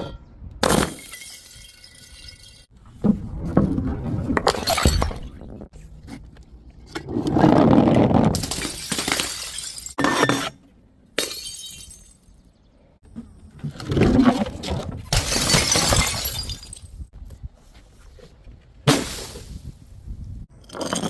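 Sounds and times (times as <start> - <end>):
glass bottles shattering: 0.7 - 2.7, 8.4 - 10.4, 11.2 - 12.5, 15.1 - 17.0.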